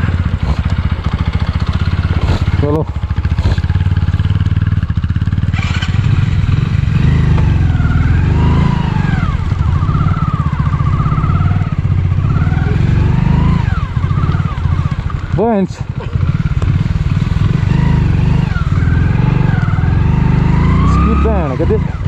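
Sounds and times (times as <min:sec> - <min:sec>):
motorcycle engine running: 0:00.0 - 0:22.0.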